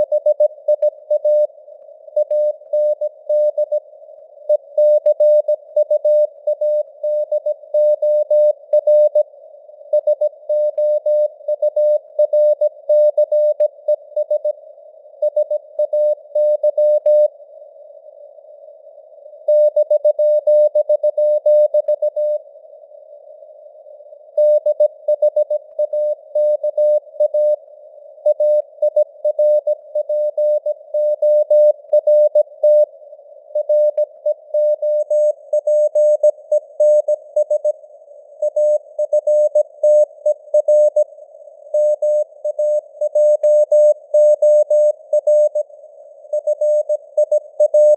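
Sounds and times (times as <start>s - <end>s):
morse code tone: 41.8s - 45.6s, 46.4s - 47.9s.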